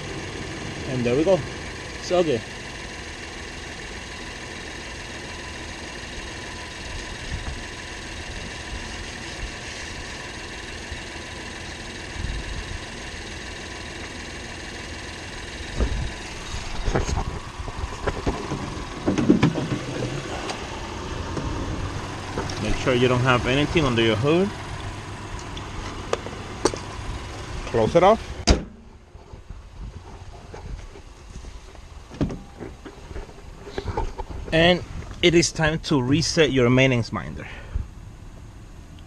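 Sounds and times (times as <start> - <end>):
car engine idling: 0.0 - 39.0
knocks and clatters: 16.7 - 20.6.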